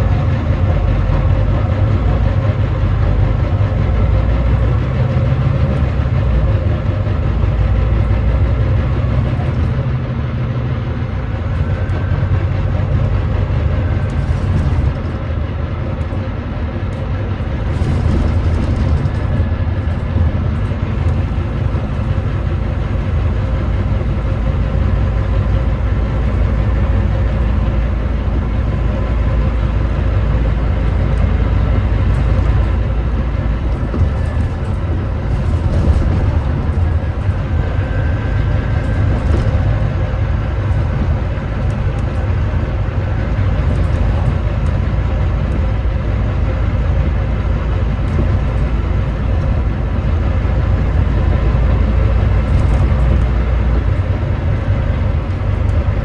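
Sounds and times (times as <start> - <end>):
diesel bus engine running: 0.0 - 56.0
light rattles: 17.6 - 39.9.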